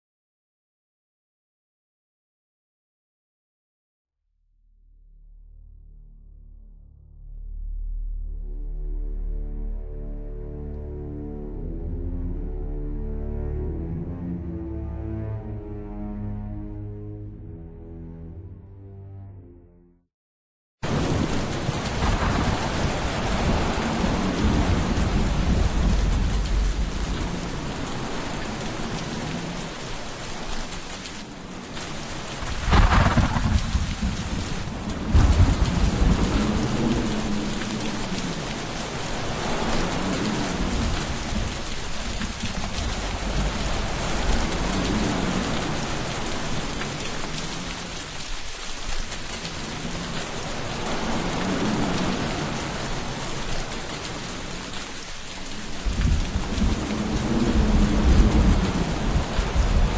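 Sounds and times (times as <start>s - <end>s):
loud thunderclaps: 20.8s - 28.0s, 32.2s - 47.1s, 55.7s - 59.9s
low rolling thunder: 20.8s - 29.2s, 32.2s - 47.0s, 55.7s - 59.9s
heavy rain: 20.8s - 59.9s.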